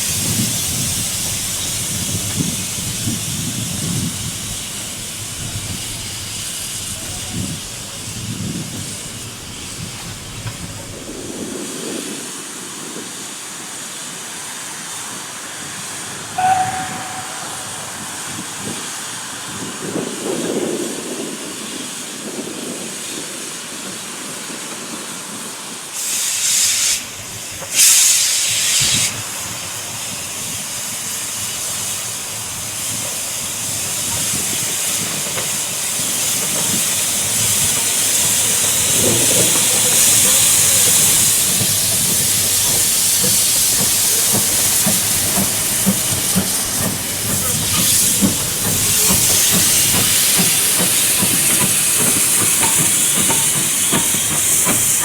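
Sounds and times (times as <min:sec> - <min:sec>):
bursts of escaping steam: 0:00.0 - 0:23.2, 0:25.2 - 0:55.0
steam locomotive hissing: 0:00.0 - 0:55.0
brief tone: 0:16.4 - 0:18.0.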